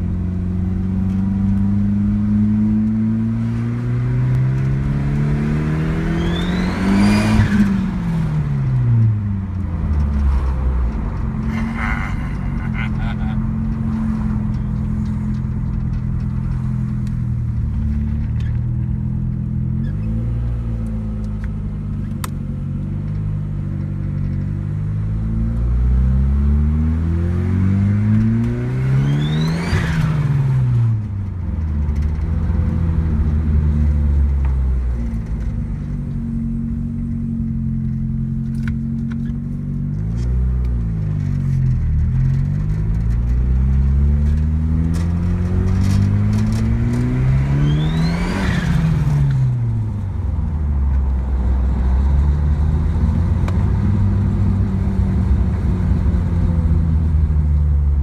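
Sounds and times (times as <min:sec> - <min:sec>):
car engine revving: 0:09.6 - 0:18.5, 0:40.2 - 0:56.7.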